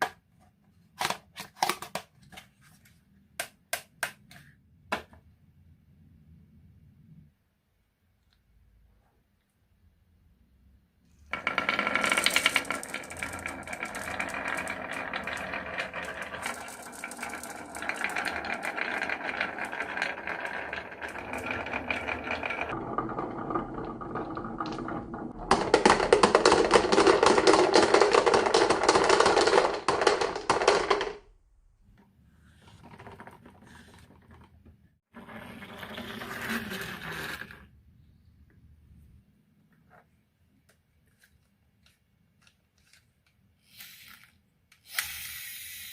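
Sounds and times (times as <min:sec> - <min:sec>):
marbles rolling on tracks: 0:11.3 - 0:31.2, 0:35.2 - 0:37.7.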